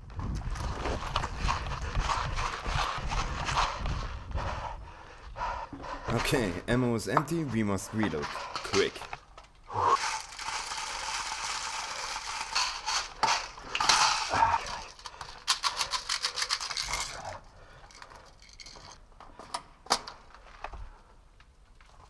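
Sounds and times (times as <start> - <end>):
airsoft magazine rattling and clicking: 8.4 - 20.7
fast run of clicks: 8.5 - 17.2.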